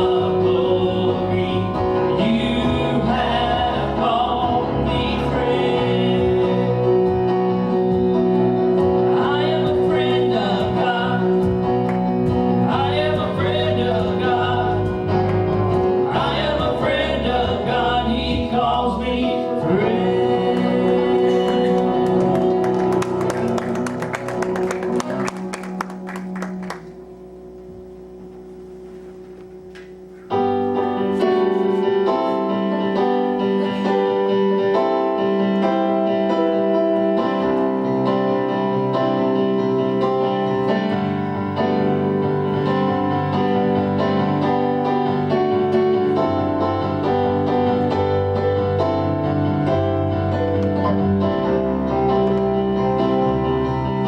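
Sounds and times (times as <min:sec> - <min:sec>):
keyboard chords: 0:00.0 - 0:54.0.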